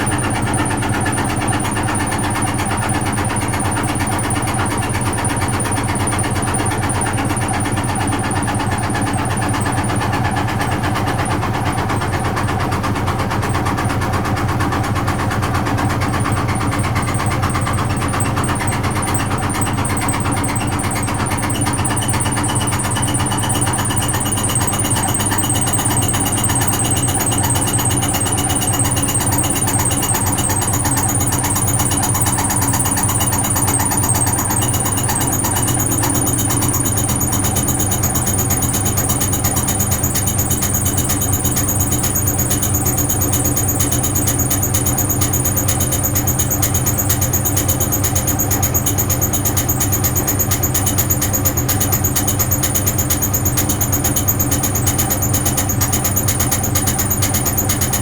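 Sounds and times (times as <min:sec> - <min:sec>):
washing machine motor hum: 0:00.0 - 0:58.0
thin high whine: 0:18.0 - 0:58.0.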